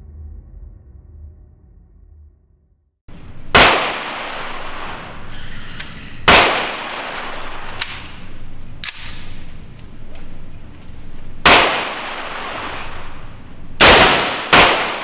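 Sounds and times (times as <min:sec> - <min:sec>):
steady background noise: 0:03.1 - 0:15.0
loud gunshots with echo: 0:03.4 - 0:05.4, 0:06.2 - 0:09.6, 0:11.4 - 0:15.0
faint gunshot cracks: 0:13.8 - 0:15.0.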